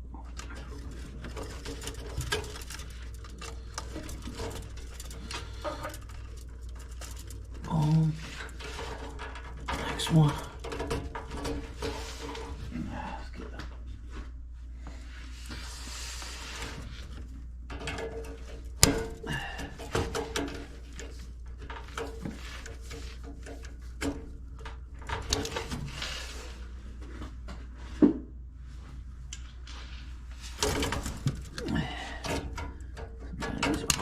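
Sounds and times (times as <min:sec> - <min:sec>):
wire connectors clicking: 0:00.3 - 0:12.4, 0:30.6 - 0:34.0.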